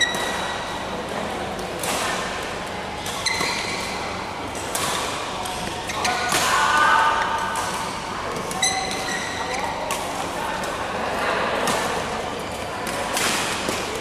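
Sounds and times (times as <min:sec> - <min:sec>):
racket hitting shuttlecock: 0:00.0 - 0:00.9, 0:01.8 - 0:10.8, 0:12.8 - 0:14.0.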